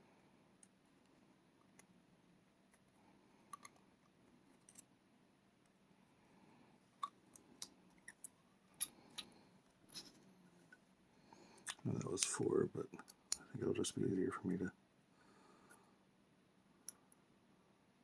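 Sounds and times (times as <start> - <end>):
small clicks of lock parts: 3.5 - 4.9, 7.0 - 10.2.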